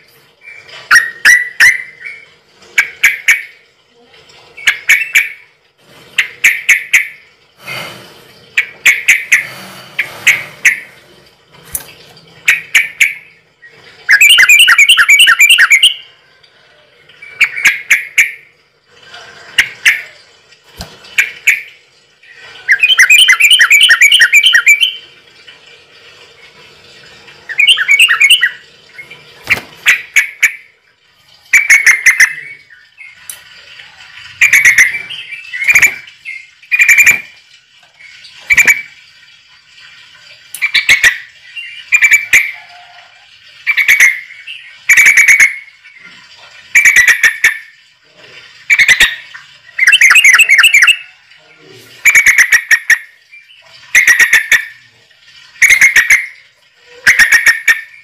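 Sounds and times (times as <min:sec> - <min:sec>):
bird calling in rapid bursts: 0:00.4 - 0:03.6, 0:04.6 - 0:05.5, 0:08.6 - 0:11.0, 0:12.5 - 0:16.1, 0:17.2 - 0:18.5, 0:21.2 - 0:25.1, 0:27.5 - 0:30.8, 0:31.5 - 0:33.3, 0:34.4 - 0:37.4, 0:38.0 - 0:39.0, 0:40.6 - 0:42.8, 0:43.6 - 0:46.0, 0:46.7 - 0:47.7, 0:48.7 - 0:51.2, 0:52.0 - 0:54.8, 0:55.6 - 0:56.4, 0:57.0 - 0:58.0
bird trills: 0:12.5 - 0:16.1, 0:21.2 - 0:25.0, 0:27.5 - 0:29.1, 0:49.8 - 0:51.1.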